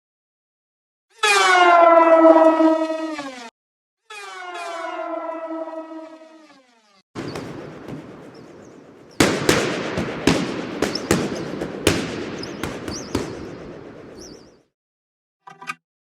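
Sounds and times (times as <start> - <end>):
faint warbling whistles: 7.2 - 9.3, 12.1 - 14.7
sharp bangs: 7.2 - 14.6.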